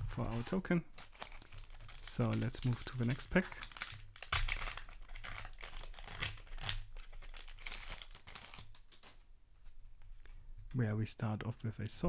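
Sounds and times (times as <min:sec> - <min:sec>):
foil wrapper crinkling: 0:00.1 - 0:09.2.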